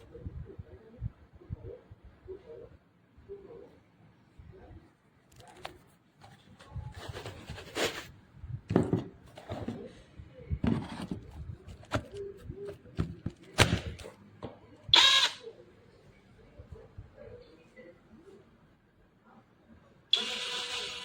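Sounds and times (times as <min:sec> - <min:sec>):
objects being handled: 0:05.3 - 0:14.6.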